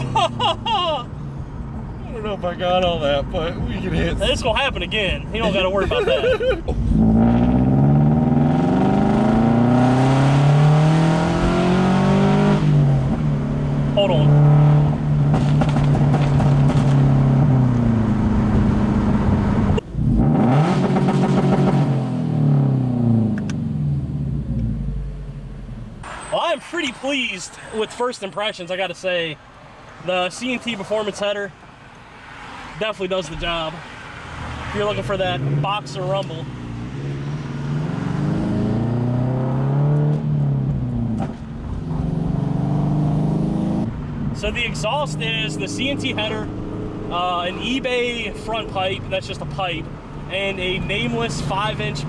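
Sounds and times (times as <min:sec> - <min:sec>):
car engine accelerating: 0:06.7 - 0:26.2, 0:34.1 - 0:52.0.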